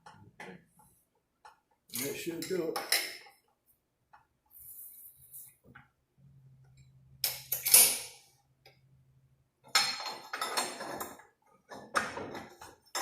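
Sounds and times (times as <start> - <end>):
metal parts clanking and rattling: 1.9 - 3.2, 7.2 - 8.2, 9.7 - 13.0.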